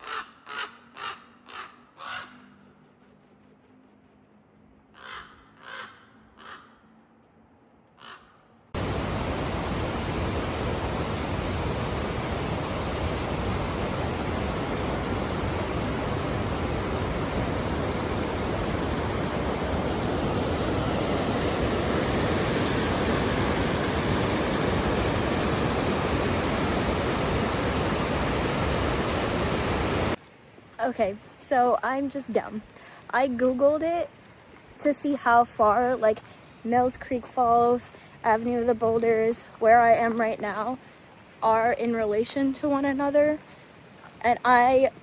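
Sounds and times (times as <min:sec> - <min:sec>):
crow cawing: 0:00.0 - 0:02.5, 0:04.9 - 0:06.8, 0:08.0 - 0:08.5
waterfall rushing: 0:08.8 - 0:30.2.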